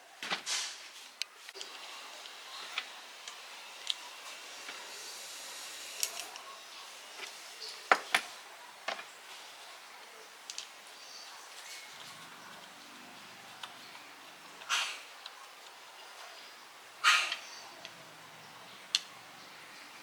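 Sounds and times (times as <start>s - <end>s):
faint steady hiss: 0.0s - 20.0s
light clicks of small parts: 10.4s - 10.8s, 18.9s - 19.1s.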